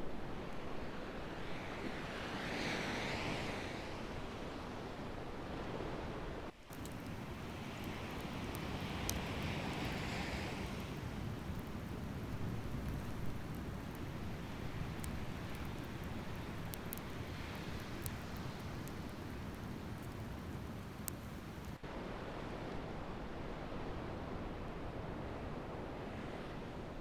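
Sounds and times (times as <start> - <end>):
waves washing on a beach: 6.7 - 20.7
faint sharp ticks: 6.7 - 21.8.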